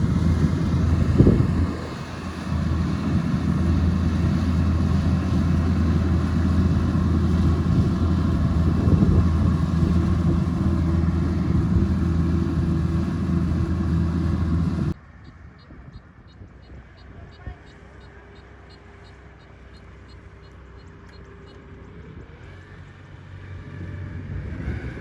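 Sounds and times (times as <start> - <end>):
combine harvester engine droning: 0.0 - 15.0.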